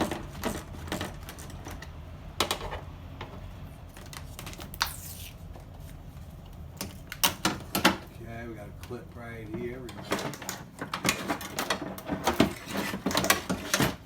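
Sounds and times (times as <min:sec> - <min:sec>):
hand tools clicking and knocking: 0:08.8 - 0:14.0.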